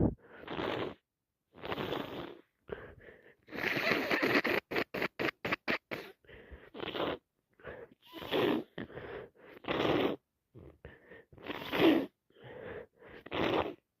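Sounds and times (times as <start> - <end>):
person blowing nose: 0.3 - 2.5, 3.5 - 7.2, 8.1 - 8.8, 11.4 - 12.1, 13.2 - 13.8.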